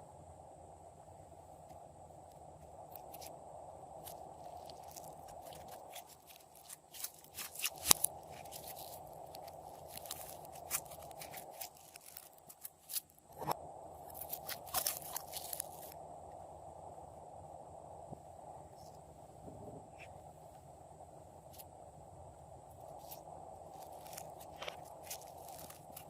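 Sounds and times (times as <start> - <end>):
faint steady hiss: 0.0 - 26.0
slime crackling and popping: 4.0 - 13.1, 14.1 - 16.0, 22.9 - 26.0.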